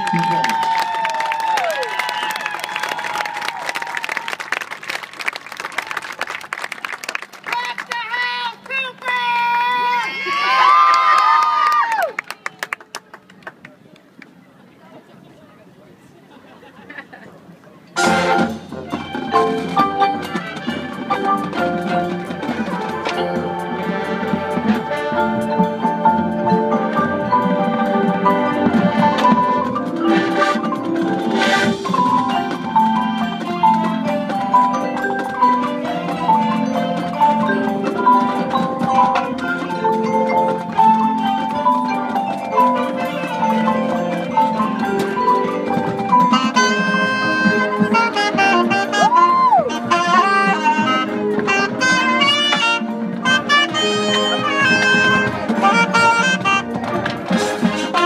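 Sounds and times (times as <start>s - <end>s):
marching band playing: 0.0s - 10.6s, 18.0s - 58.0s
marimba and xylophone: 17.9s - 58.0s
brass instruments: 18.0s - 58.0s.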